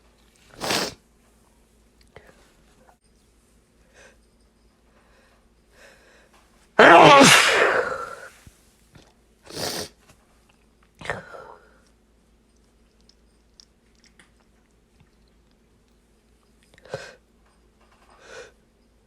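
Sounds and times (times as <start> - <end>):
person sneezing: 0.6 - 1.0, 6.8 - 8.3
bursts of breath: 6.8 - 8.3.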